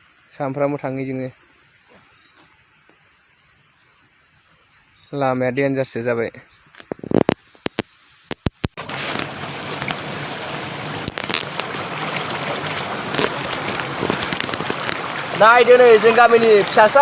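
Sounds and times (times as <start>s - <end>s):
sharp clicks: 6.8s - 8.8s
small waterfall rushing: 8.8s - 17.0s.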